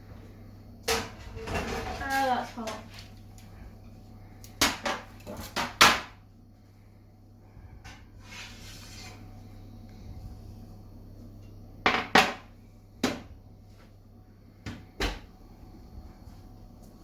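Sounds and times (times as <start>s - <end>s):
kitchenware clattering: 0.9s - 2.8s, 11.9s - 12.5s.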